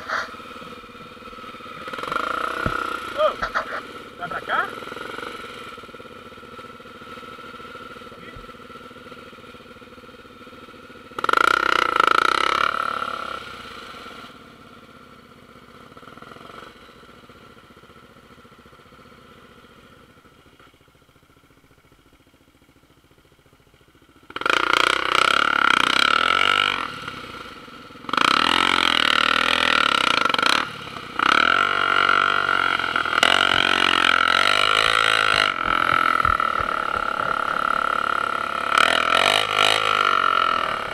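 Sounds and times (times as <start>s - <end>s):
motorbike engine revving: 0.0s - 14.9s, 24.2s - 40.9s.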